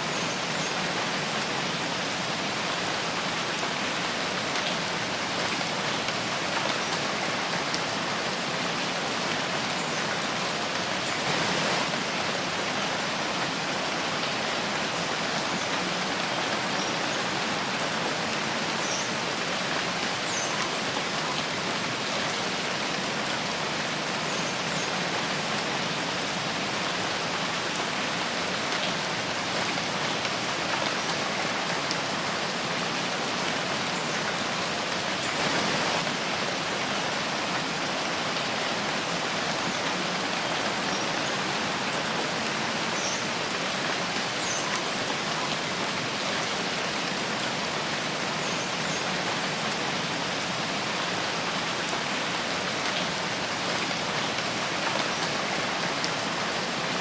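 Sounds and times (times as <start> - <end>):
rain on leaves: 0.0 - 57.0.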